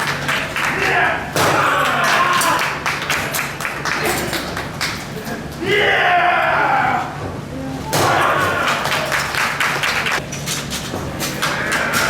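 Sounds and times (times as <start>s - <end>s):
crowd clapping: 0.0s - 1.0s, 1.8s - 5.1s, 8.4s - 10.2s, 11.4s - 12.0s
wrestlers slapping and thudding: 0.0s - 2.6s, 8.0s - 10.2s
crowd noise in a hall: 0.0s - 12.0s.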